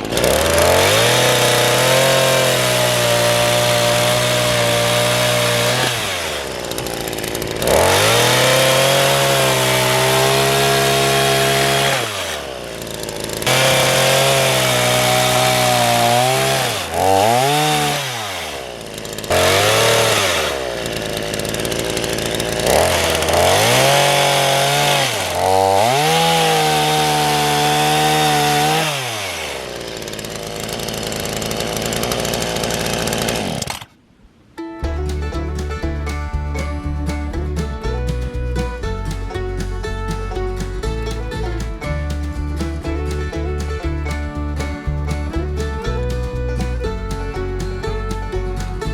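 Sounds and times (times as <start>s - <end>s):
small engine revving: 0.0s - 33.9s.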